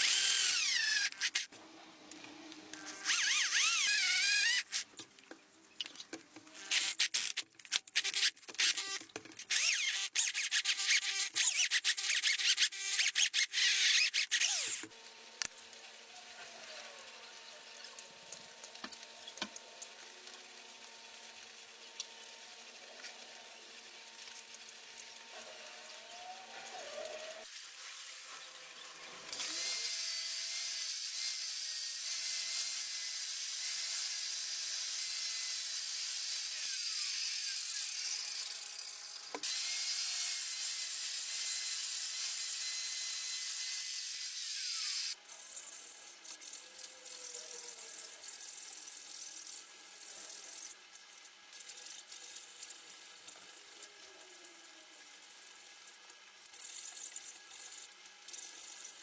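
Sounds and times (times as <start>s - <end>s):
power tool whining: 0.0s - 1.5s, 2.8s - 4.8s.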